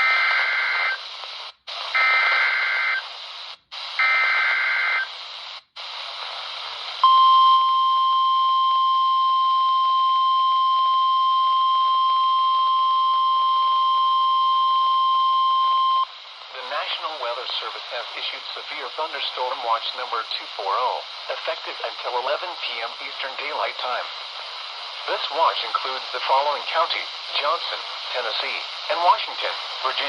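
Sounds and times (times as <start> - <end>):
radio static hiss: 0.0 - 7.1, 14.5 - 30.0.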